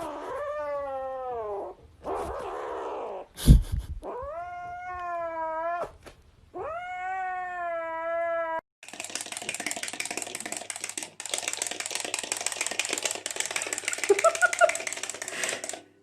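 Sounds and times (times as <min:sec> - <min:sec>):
cat yowling: 0:06.6 - 0:08.6.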